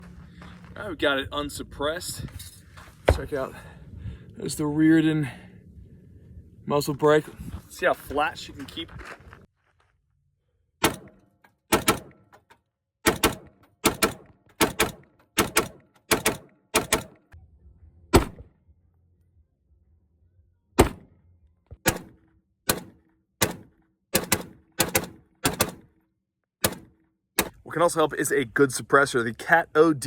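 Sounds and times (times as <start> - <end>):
rifle shots: 10.8 - 12.2, 13.1 - 17.2, 20.8 - 21.1, 21.8 - 25.9.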